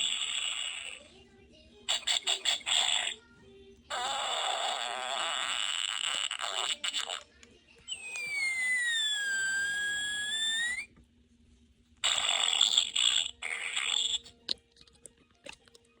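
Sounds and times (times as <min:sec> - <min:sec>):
raspy fart bursts: 0:00.0 - 0:01.1, 0:01.9 - 0:03.2, 0:03.9 - 0:07.2, 0:07.9 - 0:10.9, 0:12.0 - 0:14.4
whistling fart squeal: 0:00.0 - 0:01.1, 0:01.9 - 0:03.2, 0:03.9 - 0:07.2, 0:07.9 - 0:10.9, 0:12.0 - 0:14.4.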